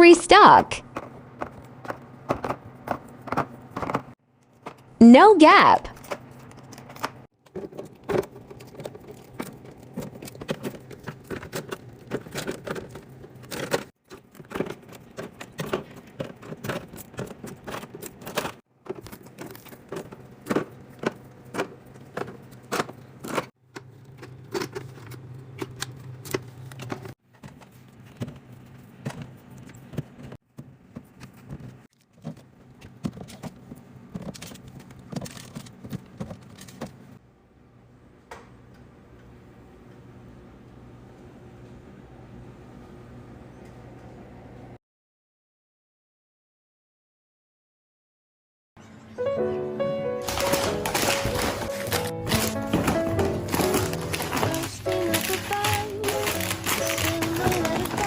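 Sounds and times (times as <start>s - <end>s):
containers clinking and clattering: 50.2s - 58.0s.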